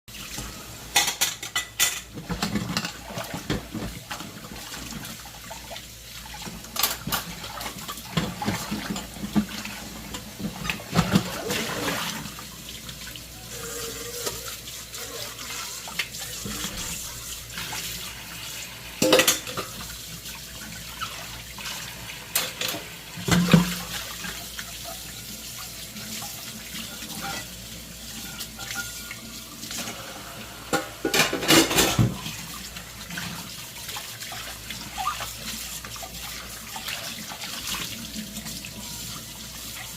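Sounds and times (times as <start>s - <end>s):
tap water running: 0.1s - 39.9s
dishes clattering: 0.9s - 4.0s, 6.7s - 12.0s, 19.0s - 19.9s, 22.3s - 24.0s, 26.8s - 30.0s, 30.7s - 32.4s.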